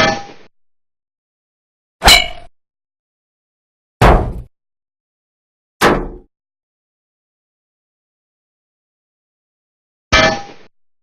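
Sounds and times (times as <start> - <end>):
bullet striking metal: 2.0 - 2.5.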